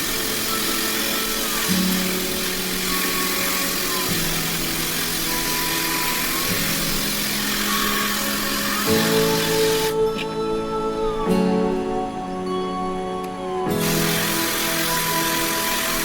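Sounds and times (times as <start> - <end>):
hair dryer running: 0.0 - 10.3, 13.7 - 16.0.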